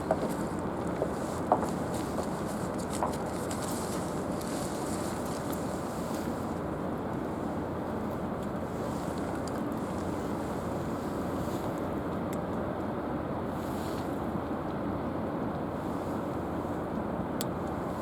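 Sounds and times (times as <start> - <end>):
low machinery rumble: 0.0 - 7.8.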